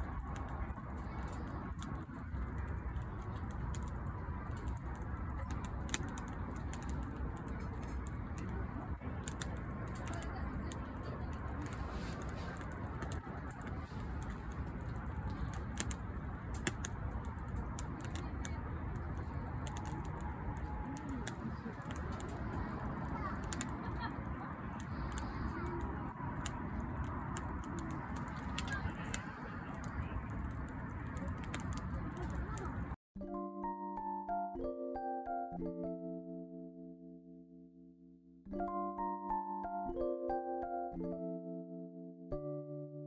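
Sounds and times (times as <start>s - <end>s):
logs crackling and popping: 0.0s - 33.0s
low rush of fire: 0.0s - 33.0s.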